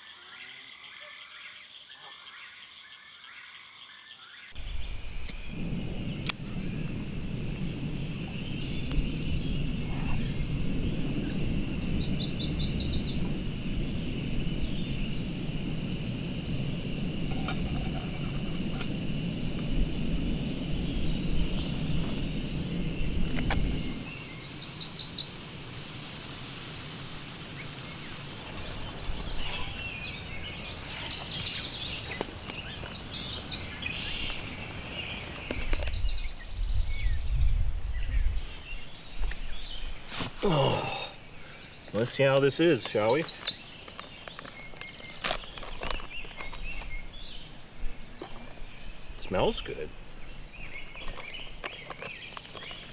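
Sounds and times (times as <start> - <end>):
low steady rumble: 4.6 - 24.1
chirping bird calls: 4.6 - 25.7.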